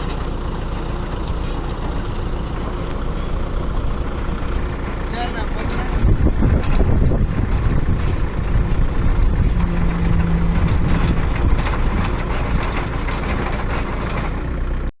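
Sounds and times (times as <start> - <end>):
baler engine drone: 0.0 - 14.9
humming tone: 8.5 - 12.9.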